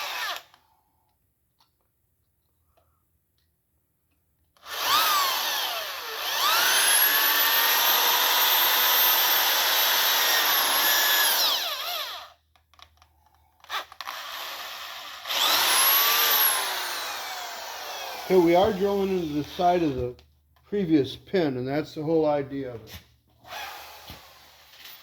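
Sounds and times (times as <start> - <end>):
drill boring into metal: 0.0 - 0.5, 4.6 - 12.3, 13.8 - 20.0.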